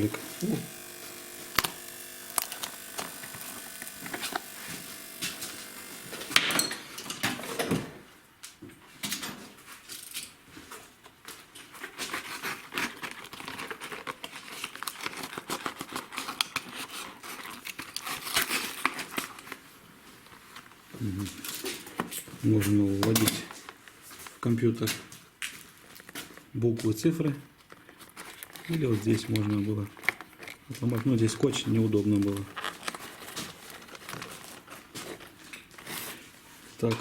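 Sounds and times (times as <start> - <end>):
roller bearing humming: 0.0 - 7.0
paper packaging crinkling and tearing: 0.0 - 7.5, 11.6 - 24.5, 27.6 - 37.0.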